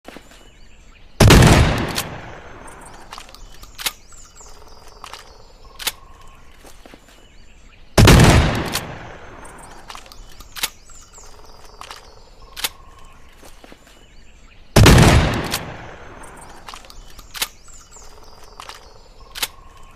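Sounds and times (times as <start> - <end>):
shotgun shot with echo: 1.2 - 2.9, 8.0 - 9.8, 14.8 - 16.6
short sharp clicks: 1.8 - 6.4, 9.6 - 13.0, 16.4 - 19.9.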